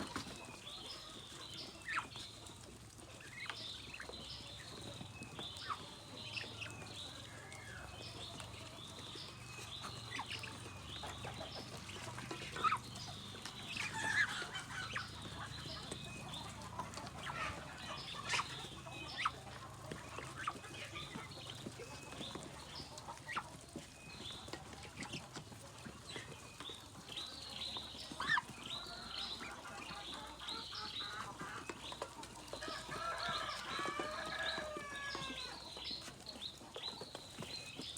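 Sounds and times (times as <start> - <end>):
chickens clucking: 0.0 - 37.9
high chicken calls: 28.1 - 36.1.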